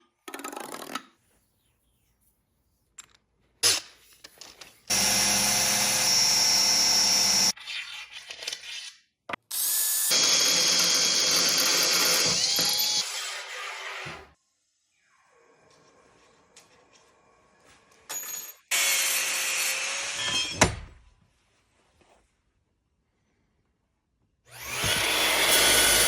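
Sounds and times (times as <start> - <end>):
power tool whining: 4.9 - 7.5, 10.0 - 14.2, 24.5 - 26.0.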